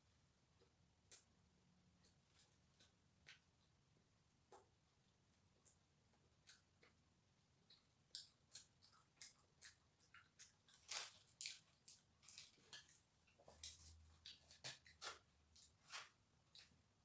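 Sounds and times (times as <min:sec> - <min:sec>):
person chewing: 0:07.6 - 0:13.0.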